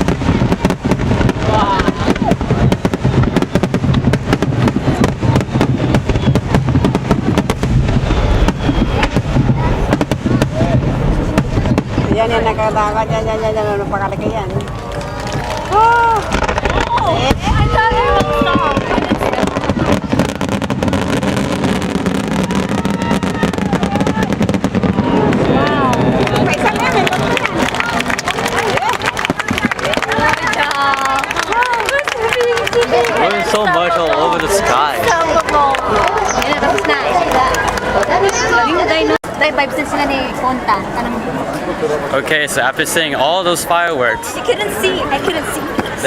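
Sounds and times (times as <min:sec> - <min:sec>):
low rumble: 0:00.0 - 0:27.7
fireworks bursts and crackles: 0:00.0 - 0:46.0.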